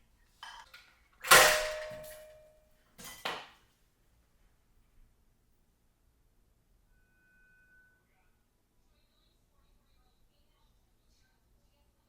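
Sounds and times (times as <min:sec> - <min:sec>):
knocks of metal cookware: 0:01.2 - 0:02.4
metallic clang ringing: 0:01.2 - 0:03.3.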